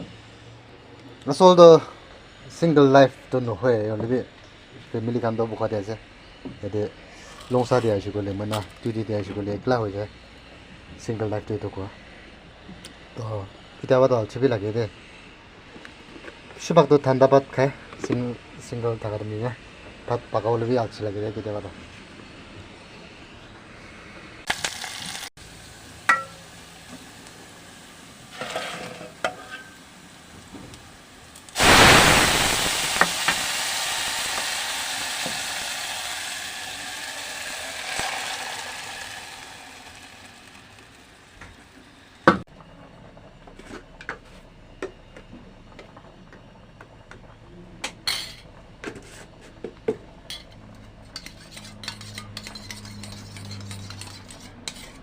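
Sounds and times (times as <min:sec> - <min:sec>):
food sizzling in hot oil: 0:24.4 - 0:42.5
metal utensil scraping pan: 0:28.3 - 0:29.8, 0:50.3 - 0:55.0.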